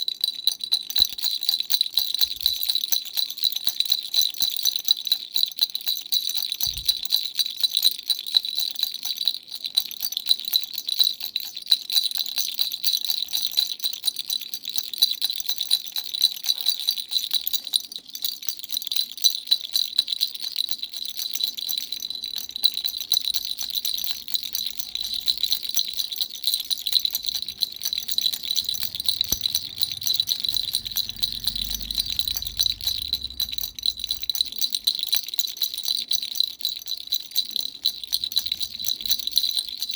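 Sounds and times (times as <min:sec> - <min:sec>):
baby rattle jingling: 0:00.0 - 0:39.9
high ringing tone: 0:22.2 - 0:35.2.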